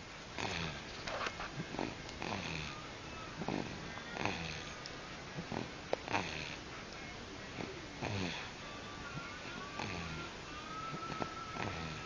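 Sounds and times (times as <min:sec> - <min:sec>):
child snoring: 0:00.4 - 0:00.8, 0:01.7 - 0:04.8, 0:05.5 - 0:06.6, 0:07.6 - 0:08.6, 0:09.5 - 0:12.0.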